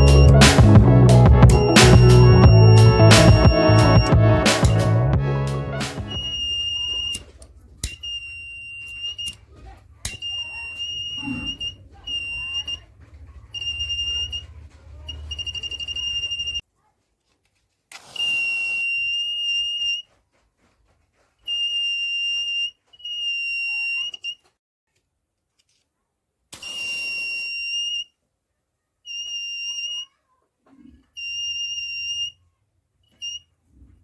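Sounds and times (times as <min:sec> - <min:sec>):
high-pitched buzzer beeping: 0:00.0 - 0:04.9, 0:06.0 - 0:07.2, 0:10.2 - 0:12.8
low hum: 0:00.0 - 0:06.4.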